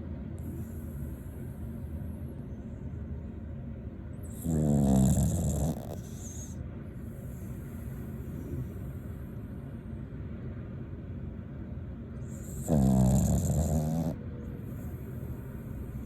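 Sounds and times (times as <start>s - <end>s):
dog snoring: 0.4s - 2.1s, 4.2s - 9.3s, 12.2s - 16.0s.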